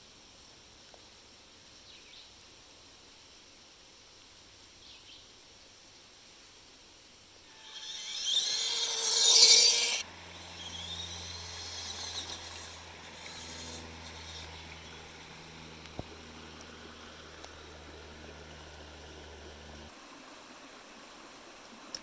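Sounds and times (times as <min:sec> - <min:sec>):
small motor and gearbox whining: 0:07.5 - 0:16.8.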